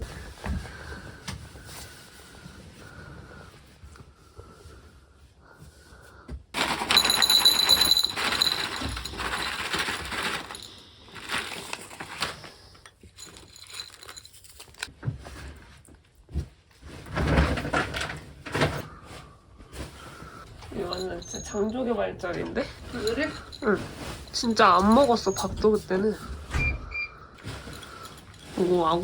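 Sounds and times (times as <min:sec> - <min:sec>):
household things clattering: 0:06.6 - 0:26.7, 0:27.3 - 0:29.0.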